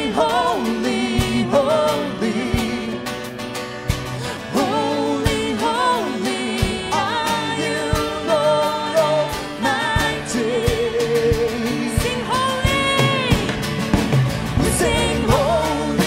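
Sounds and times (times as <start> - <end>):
person singing with vibrato: 0.0 - 3.3, 4.2 - 13.8, 14.5 - 16.0
band with steady drum beats: 0.0 - 16.0.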